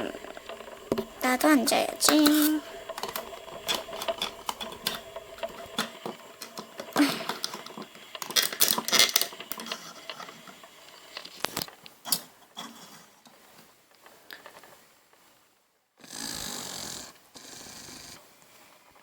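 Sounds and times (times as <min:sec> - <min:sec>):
plastic toy pieces clicking: 0:00.0 - 0:12.2.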